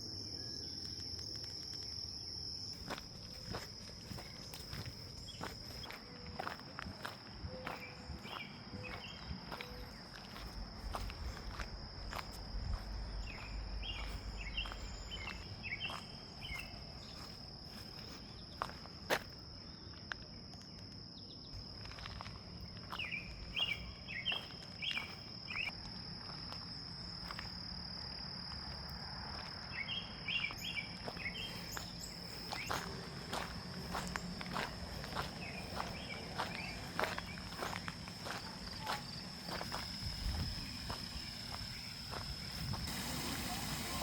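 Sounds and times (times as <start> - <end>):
high-pitched insect drone: 0.0 - 19.8, 21.5 - 44.0
bird chirping: 13.1 - 17.4, 23.0 - 25.7.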